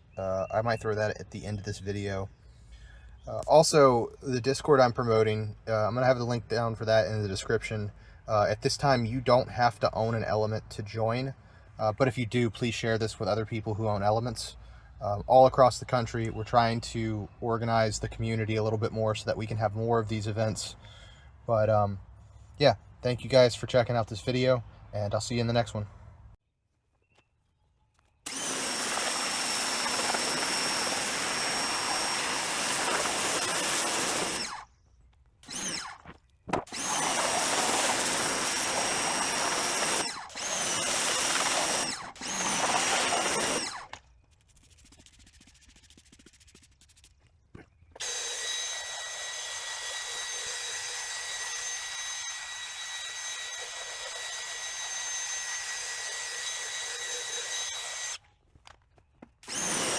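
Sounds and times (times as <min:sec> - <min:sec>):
drill scrub brush on carpet mat: 0:28.3 - 0:34.6, 0:36.7 - 0:47.2, 0:59.5 - 0:59.9
motor with high whine: 0:28.3 - 0:34.6, 0:35.5 - 0:36.0.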